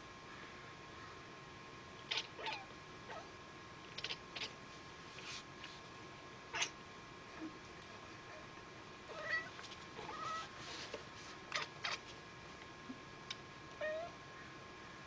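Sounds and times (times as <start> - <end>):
cat chirping: 2.1 - 3.3, 3.9 - 4.6, 13.8 - 14.1.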